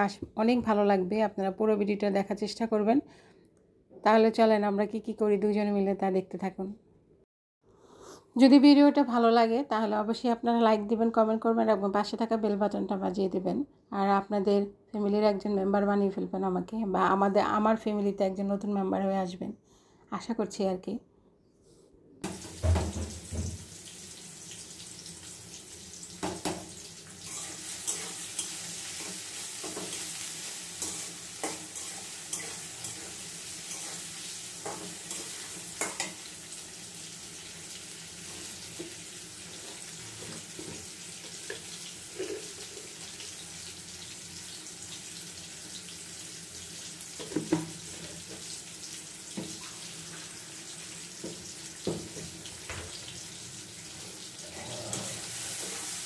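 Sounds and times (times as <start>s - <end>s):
food sizzling in a frying pan: 22.2s - 56.0s.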